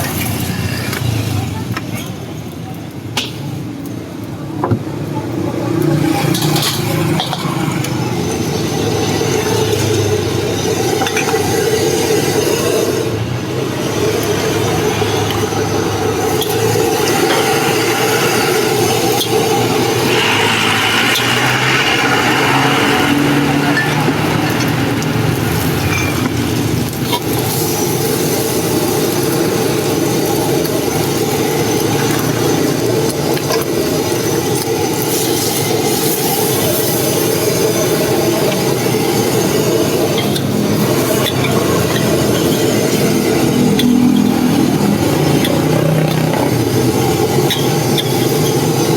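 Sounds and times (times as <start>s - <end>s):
spatula scraping wok: 0.0s - 1.4s, 5.9s - 48.9s
food sizzling in wok: 0.0s - 2.2s, 5.8s - 48.9s
gas burner rushing: 5.5s - 48.9s.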